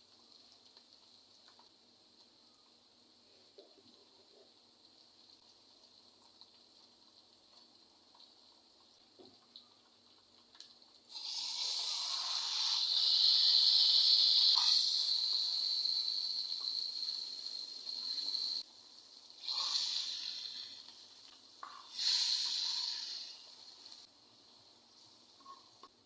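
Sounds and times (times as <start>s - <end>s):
food sizzling in hot oil: 10.1s - 25.9s.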